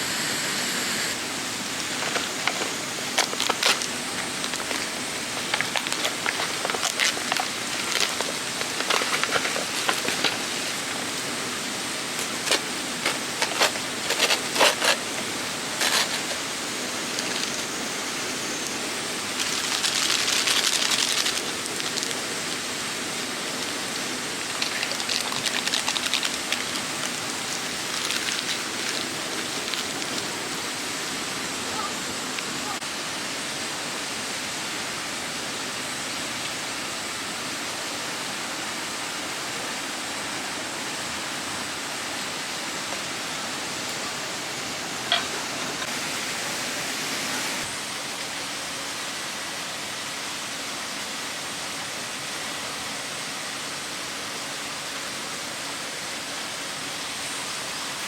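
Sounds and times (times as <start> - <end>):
loud hissing: 0.0 - 33.0
stream rushing: 0.0 - 58.0.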